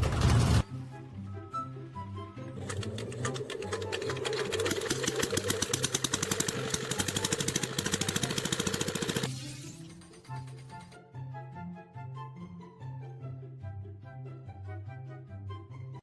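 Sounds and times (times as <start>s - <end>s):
background music: 0.0s - 16.0s
fast mechanical rattle of clicks: 2.6s - 9.3s.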